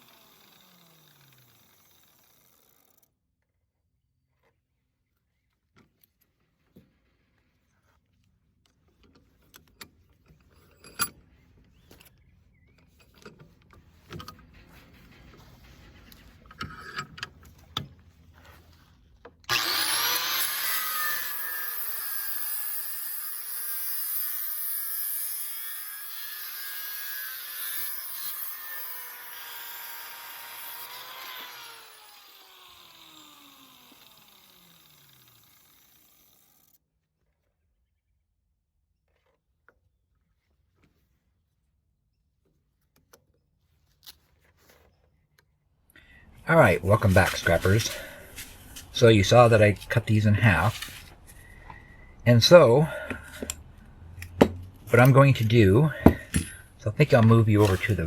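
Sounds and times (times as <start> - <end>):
power saw cutting metal: 0.0 - 2.6, 19.5 - 36.8, 46.8 - 51.1, 54.2 - 58.0
handling knocks and clicks: 56.0 - 57.9.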